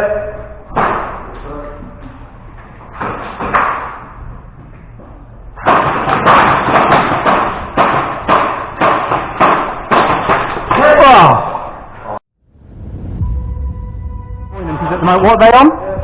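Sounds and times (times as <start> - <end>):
sharp thuds and knocks: 5.6 - 11.0.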